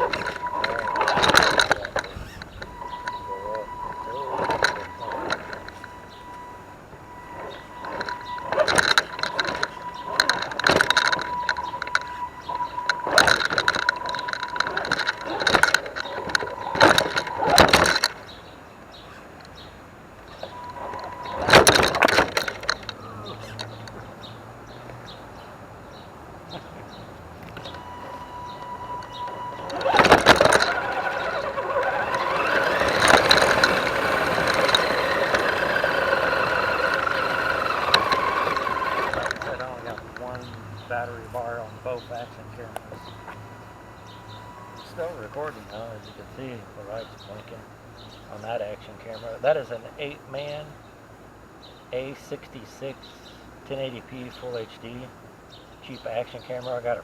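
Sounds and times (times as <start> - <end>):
electric motor whine: 0.0 - 18.1, 20.3 - 23.8, 27.6 - 40.4
tyres crunching over rough ground: 0.0 - 19.6, 20.2 - 49.3
loud clatter: 27.6 - 40.3.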